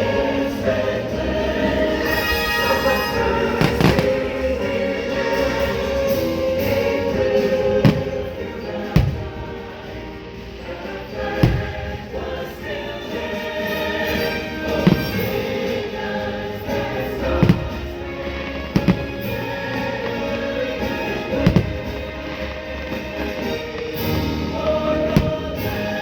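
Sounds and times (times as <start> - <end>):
choir singing: 0.0 - 26.0
fireworks booming: 0.0 - 26.0.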